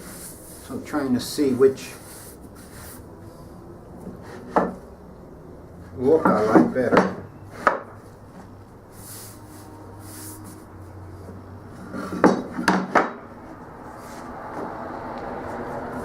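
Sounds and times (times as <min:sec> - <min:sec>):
wood boards sliding and rubbing: 0:00.0 - 0:00.8, 0:07.5 - 0:16.0
sharp wooden knocks: 0:12.1 - 0:13.2.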